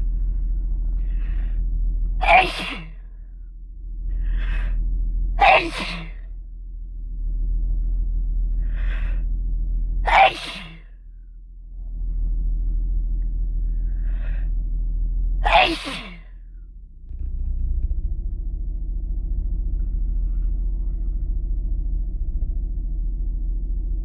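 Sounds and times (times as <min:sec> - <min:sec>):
low rumble: 0:00.0 - 0:24.0
person sneezing: 0:02.2 - 0:02.9, 0:10.1 - 0:10.8, 0:15.4 - 0:16.2.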